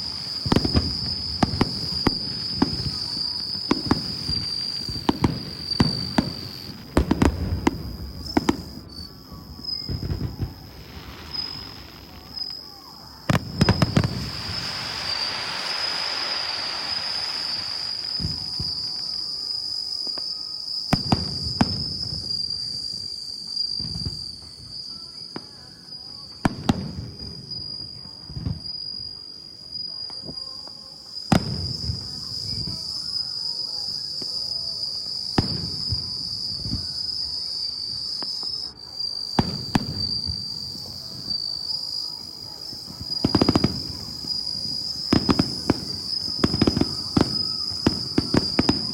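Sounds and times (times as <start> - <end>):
firework shells bursting with booms: 0.0 - 24.8, 31.2 - 33.3, 38.0 - 48.9
crackling firework shower: 0.0 - 48.9
high insect trill: 0.0 - 48.9.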